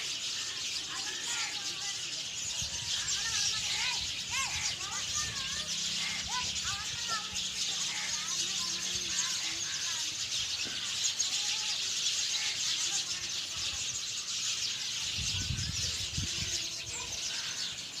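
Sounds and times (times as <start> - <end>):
many small birds chirping: 0.0 - 18.0.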